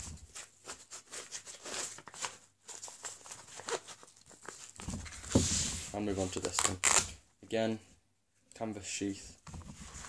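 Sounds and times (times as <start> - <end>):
canvas sheath rustling: 0.0 - 7.2.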